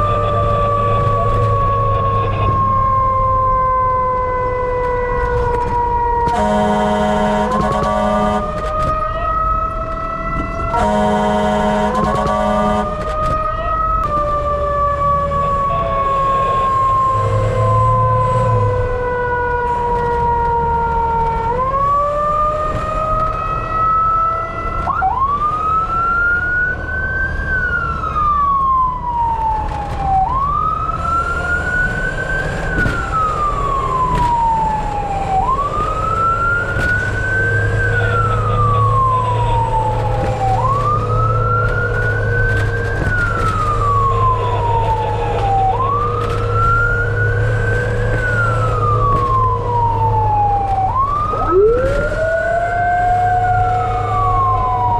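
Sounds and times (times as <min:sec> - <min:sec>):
low engine rumble: 0:00.0 - 0:16.7, 0:29.8 - 0:54.9
fire truck siren wailing: 0:00.0 - 0:54.9
lower siren tone: 0:00.0 - 0:54.9.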